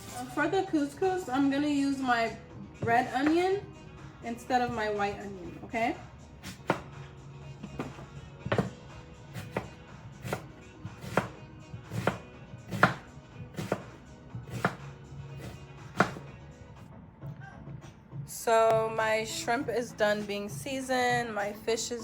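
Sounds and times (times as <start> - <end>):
knife chopping on cutting board: 2.8 - 3.5, 6.4 - 7.0, 7.7 - 16.3.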